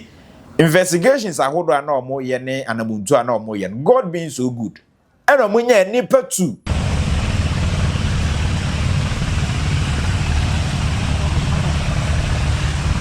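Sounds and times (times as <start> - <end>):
motor vehicle running: 6.7 - 13.0.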